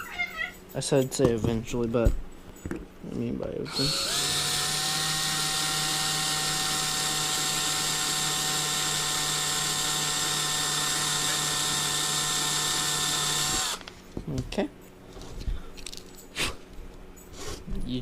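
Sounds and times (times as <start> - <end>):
small power drill running: 3.7 - 13.9.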